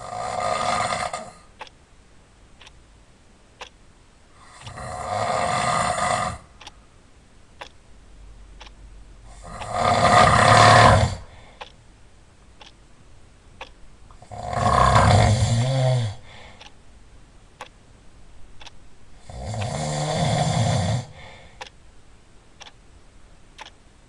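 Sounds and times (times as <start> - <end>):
loud snoring: 0.0 - 1.4, 4.4 - 6.5, 9.3 - 11.3, 14.2 - 16.2, 19.2 - 21.2.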